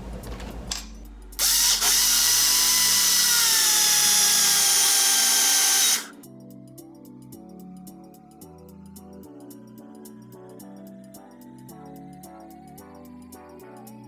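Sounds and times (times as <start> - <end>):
background music: 0.9 - 14.0
kitchen appliance motor whining: 1.4 - 6.1.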